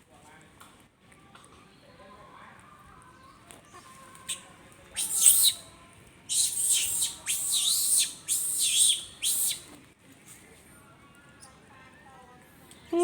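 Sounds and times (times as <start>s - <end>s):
monkey screaming: 5.0s - 5.6s, 6.3s - 9.6s.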